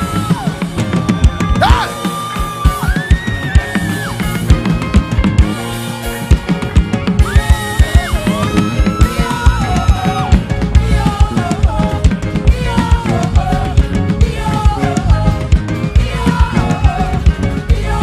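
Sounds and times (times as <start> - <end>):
drum kit playing a busy beat: 0.0 - 18.0.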